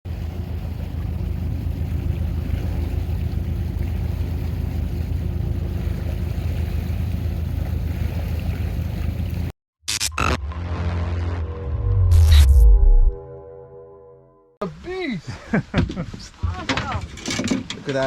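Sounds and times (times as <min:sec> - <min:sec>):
boat motor running: 0:00.0 - 0:09.5
water noise: 0:00.0 - 0:09.5
wind: 0:00.0 - 0:09.5, 0:14.6 - 0:18.0.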